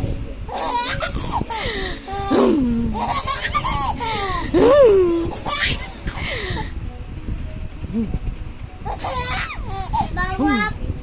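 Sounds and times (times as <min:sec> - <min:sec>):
baby laughing: 0:00.5 - 0:06.7, 0:08.8 - 0:10.8.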